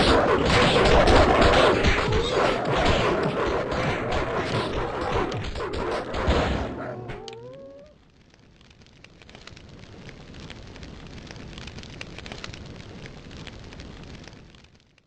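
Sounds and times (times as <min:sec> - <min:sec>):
crackling hissing noise: 0:00.0 - 0:15.0
dog yelping: 0:05.8 - 0:08.0.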